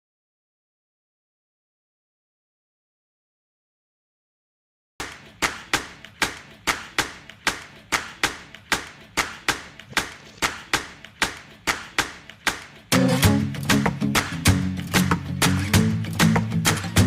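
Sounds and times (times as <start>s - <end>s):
sharp rhythmic claps: 5.0s - 17.0s
guitar music: 12.9s - 17.0s.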